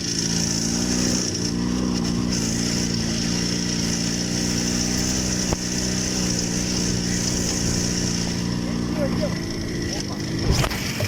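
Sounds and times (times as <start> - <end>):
motorcycle engine running: 0.0 - 11.0.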